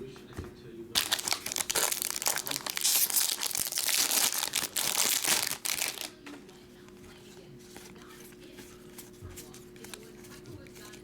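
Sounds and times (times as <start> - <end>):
foil wrapper tearing and crinkling: 1.0 - 6.2.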